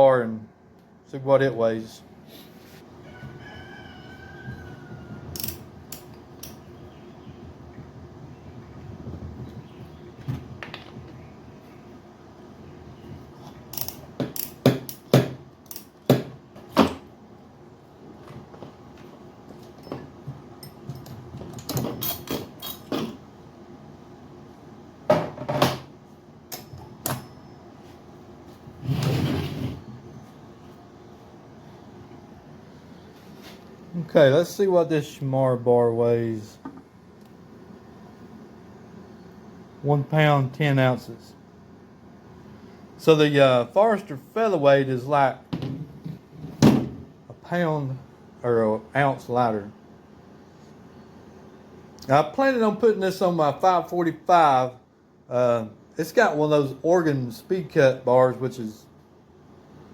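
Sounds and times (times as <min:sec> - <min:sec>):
scrape or rustle: 0:02.3 - 0:02.9, 0:27.8 - 0:29.8, 0:33.1 - 0:33.6
rooster crowing: 0:03.0 - 0:05.4
handling knocks and rattles: 0:18.2 - 0:23.2.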